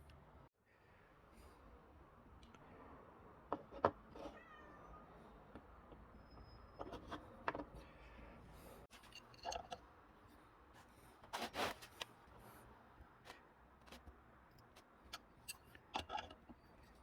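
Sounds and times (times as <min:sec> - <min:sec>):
short scraping rubs: 0:11.2 - 0:12.0.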